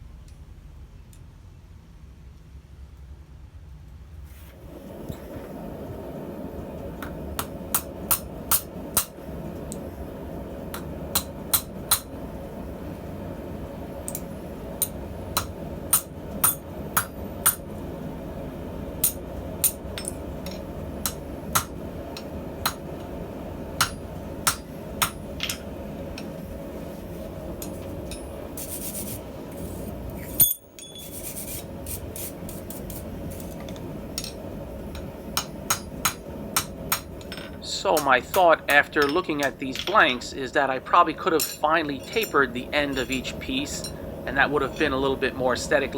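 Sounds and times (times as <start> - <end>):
hammer striking steel on anvil: 7.0 - 9.2, 10.7 - 12.1, 14.1 - 17.7, 19.0 - 22.8, 23.8 - 26.3, 27.6 - 28.4, 30.4 - 31.1, 34.2 - 40.2, 41.3 - 44.0.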